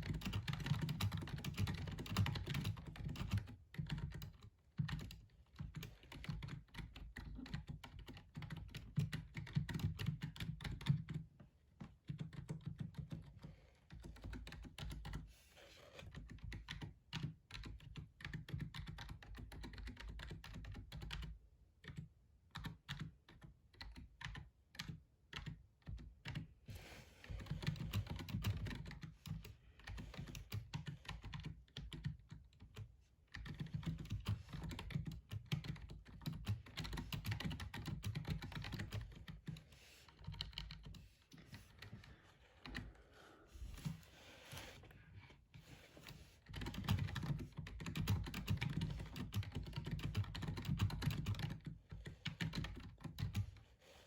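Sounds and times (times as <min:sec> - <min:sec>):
keyboard typing: 0:00.0 - 0:11.2, 0:27.4 - 0:42.9, 0:46.4 - 0:53.6.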